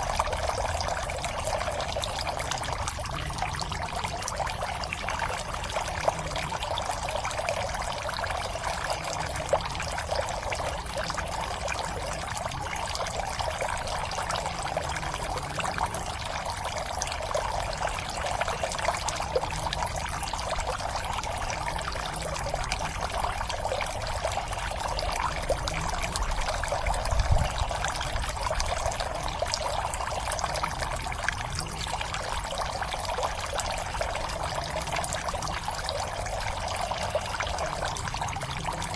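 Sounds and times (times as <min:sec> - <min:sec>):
water trickling into a pond: 0:00.0 - 0:38.9.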